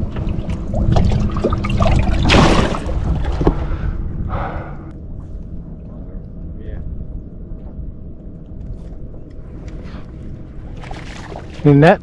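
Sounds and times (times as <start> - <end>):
water splashing: 0.0 - 3.8, 10.6 - 12.0
wind rumble on microphone: 0.0 - 12.0.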